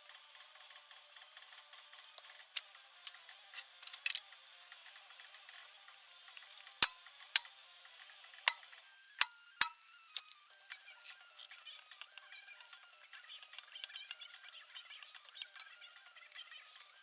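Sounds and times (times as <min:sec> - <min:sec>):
hand tools clicking and tapping: 0:06.8 - 0:07.5, 0:08.5 - 0:15.8.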